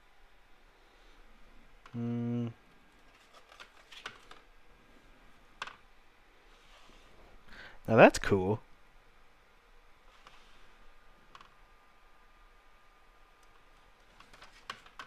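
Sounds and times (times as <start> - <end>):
man humming: 1.9 - 2.6
book pages turning: 3.0 - 4.4, 14.0 - 15.0.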